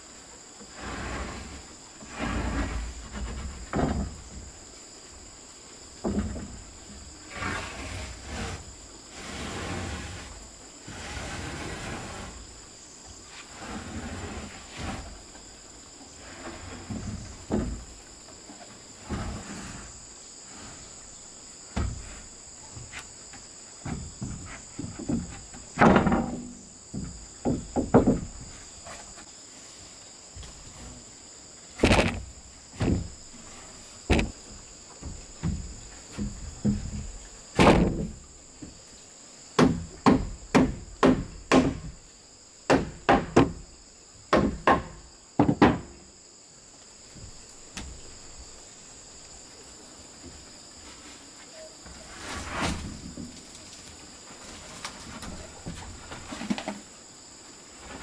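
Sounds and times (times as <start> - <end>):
high insect chirr: 0.0 - 58.0
wooden knocks and thumps: 2.0 - 4.6, 6.0 - 7.1, 16.4 - 19.6, 21.7 - 29.3, 31.8 - 38.8, 39.6 - 42.0, 42.7 - 43.7, 44.3 - 46.1, 47.1 - 48.4.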